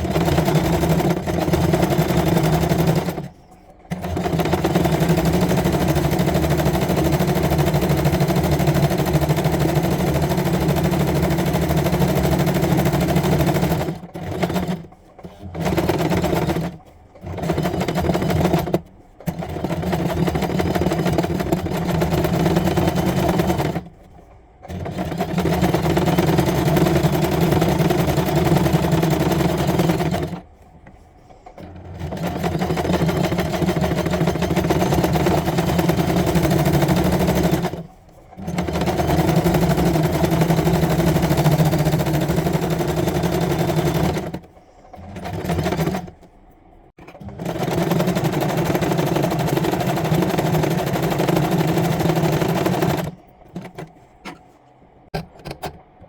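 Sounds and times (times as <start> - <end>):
electric sewing machine running: 0.0 - 3.3, 3.9 - 23.9, 24.7 - 30.4, 31.6 - 46.1, 47.2 - 53.8.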